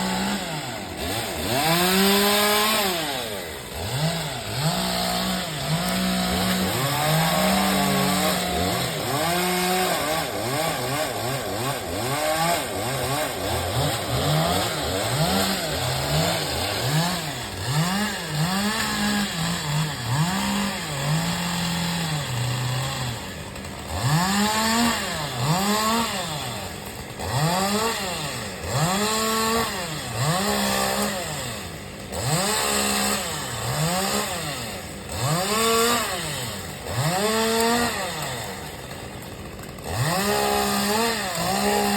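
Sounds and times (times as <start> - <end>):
chainsaw engine revving: 0.0 - 41.9.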